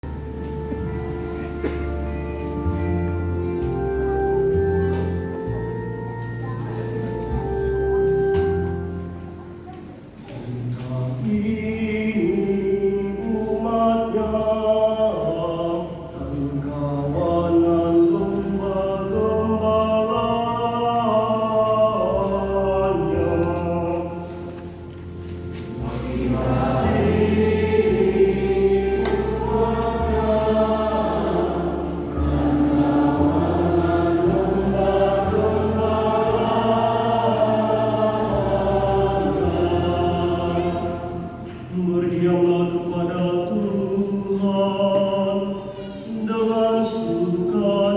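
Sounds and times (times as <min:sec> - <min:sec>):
organ chords: 0:00.0 - 0:10.2, 0:11.6 - 0:46.2
choir singing a hymn: 0:11.2 - 0:47.9.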